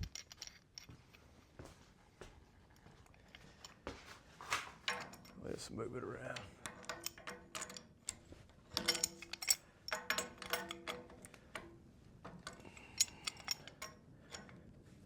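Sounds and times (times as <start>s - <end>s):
steel parts knocking and clinking: 0.0s - 0.9s, 4.8s - 5.5s, 6.3s - 14.8s.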